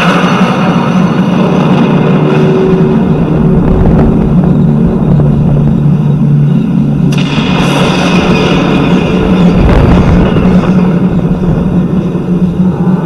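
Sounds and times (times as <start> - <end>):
low rumbling drone: 0.0 - 13.0.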